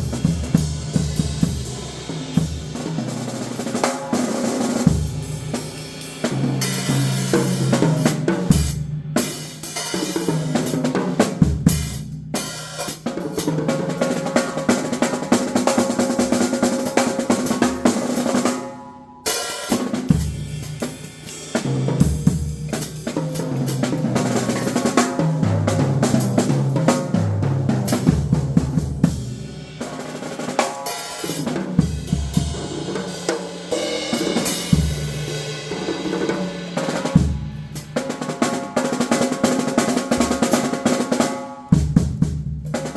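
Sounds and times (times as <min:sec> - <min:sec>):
drum kit playing: 0:00.0 - 0:42.9.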